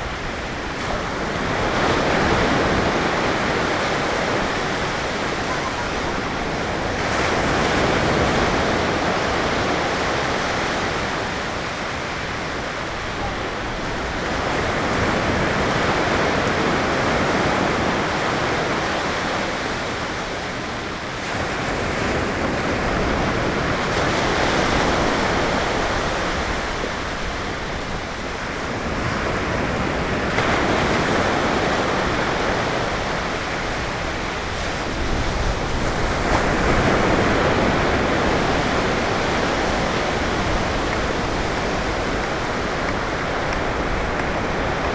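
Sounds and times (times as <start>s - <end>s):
ocean waves breaking on beach: 0.0s - 44.9s.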